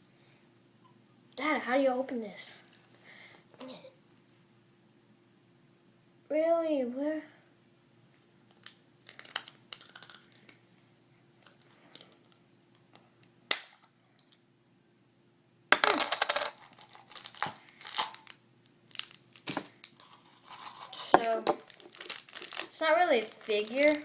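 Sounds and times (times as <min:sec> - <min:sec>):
plastic capsule clicking and rattling: 0:08.6 - 0:10.5, 0:15.8 - 0:18.3.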